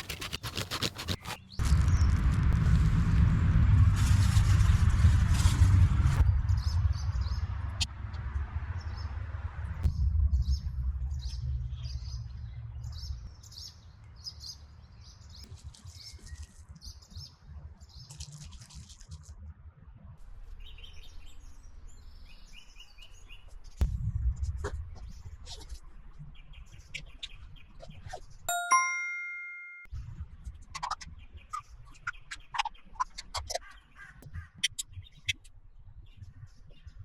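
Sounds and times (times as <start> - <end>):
low rumbling noise: 1.6 - 13.4, 23.8 - 25.2.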